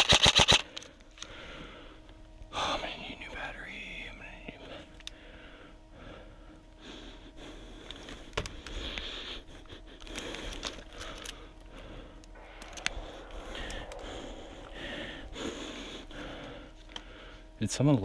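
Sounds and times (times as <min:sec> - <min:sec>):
person breathing and sniffing: 0:04.8 - 0:17.5.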